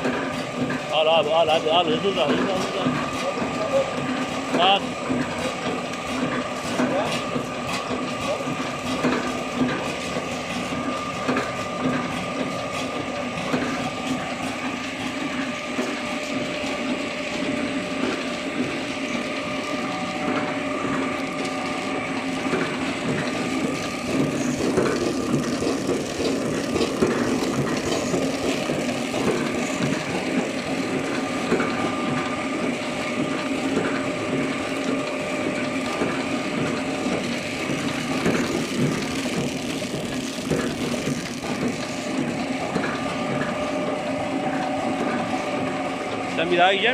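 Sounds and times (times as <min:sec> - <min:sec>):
packaging machine humming: 0:00.0 - 0:46.9.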